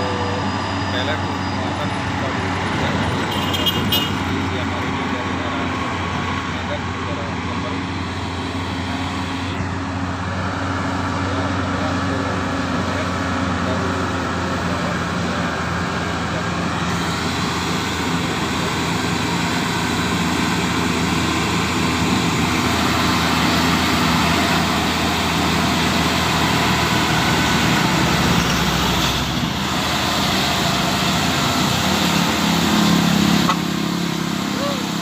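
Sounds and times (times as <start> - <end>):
road noise: 0.0 - 35.0
truck diesel engine under load: 0.0 - 35.0.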